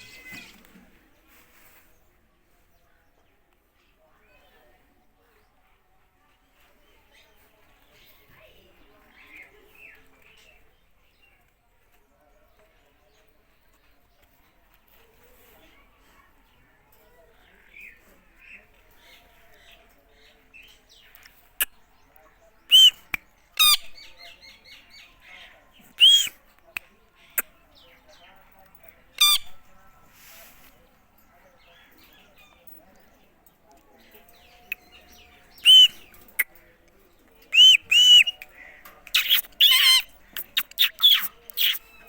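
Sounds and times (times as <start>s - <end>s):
parakeet chirps and squawks: 22.7s - 23.0s, 23.6s - 24.1s, 26.0s - 26.3s, 29.2s - 29.5s, 35.6s - 36.0s, 37.5s - 38.4s, 39.1s - 41.9s
parakeet whistling: 22.7s - 23.0s, 26.0s - 26.3s, 35.6s - 36.0s, 37.5s - 38.4s.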